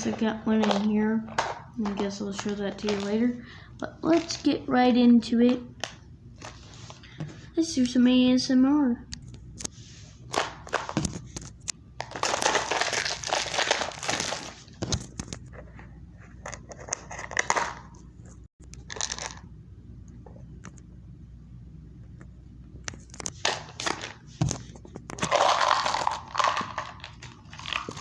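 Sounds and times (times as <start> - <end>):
packaging crinkling and clicking: 0.0 - 3.3, 10.3 - 15.5, 22.9 - 28.0
packaging crumpling and tearing: 0.6 - 3.3, 4.1 - 4.5, 12.0 - 15.4, 25.2 - 28.0.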